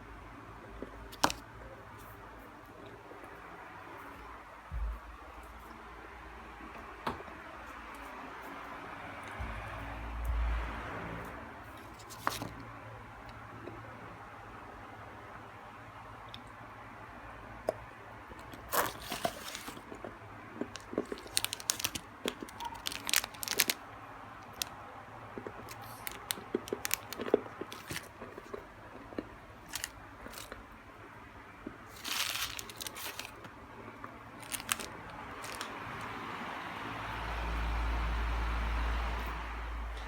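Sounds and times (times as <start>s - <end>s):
wrapper rustling: 18.7s - 19.8s, 20.8s - 23.8s, 25.6s - 28.2s, 29.6s - 30.6s, 31.9s - 33.5s, 34.4s - 35.8s
snacks crunching: 20.6s - 23.8s, 25.4s - 30.6s
wrappers crinkling: 20.7s - 23.8s, 24.4s - 24.8s, 25.5s - 28.2s, 29.6s - 30.6s, 31.9s - 33.5s, 34.4s - 35.8s.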